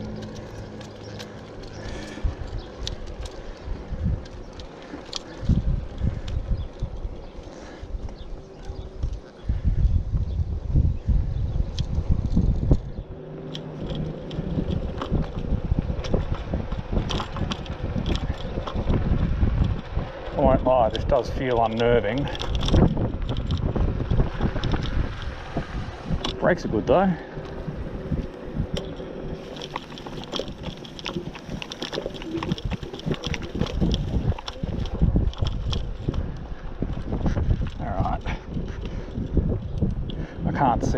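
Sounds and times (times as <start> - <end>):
low hum: 0.0 - 40.9
scooter rattling over bumps: 0.0 - 40.9
wind buffeting microphone: 0.0 - 40.9
tyres rumbling on ground: 12.0 - 40.9.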